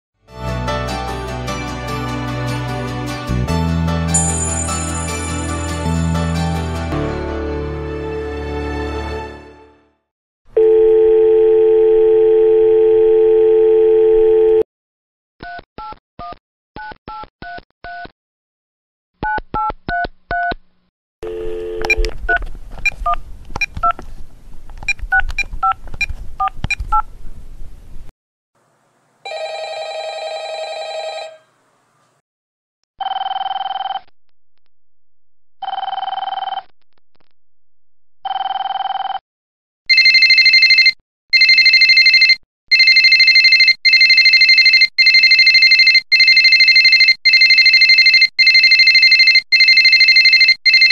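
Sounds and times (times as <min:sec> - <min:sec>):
phone ringing: 0:10.6 - 0:14.6, 0:21.2 - 0:22.0, 0:29.3 - 0:31.5, 0:33.0 - 0:34.1, 0:35.6 - 0:36.6, 0:38.3 - 0:39.2, 0:39.9 - 0:50.9
telephone dial tone: 0:10.6 - 0:14.6, 0:21.2 - 0:22.1, 0:29.3 - 0:31.4, 0:33.0 - 0:34.1, 0:35.6 - 0:36.7, 0:38.3 - 0:39.2, 0:39.9 - 0:50.9.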